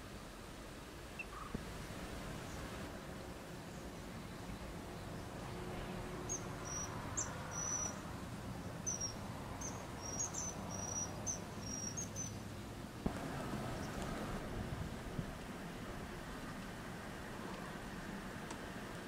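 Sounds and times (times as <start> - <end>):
low background rumble: 11.2 - 19.0.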